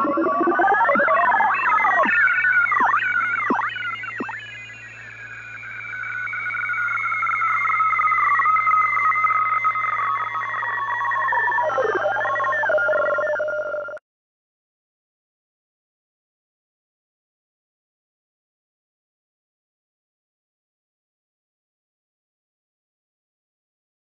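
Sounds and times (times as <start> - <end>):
swooping electronic tones: 0.0 - 14.0.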